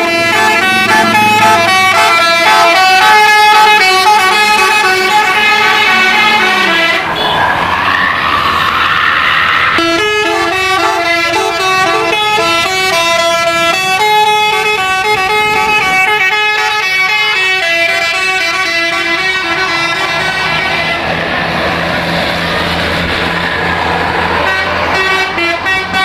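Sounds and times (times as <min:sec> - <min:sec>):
musical bus horn playing a tune: 0:00.0 - 0:07.5, 0:09.8 - 0:21.2, 0:24.4 - 0:26.0.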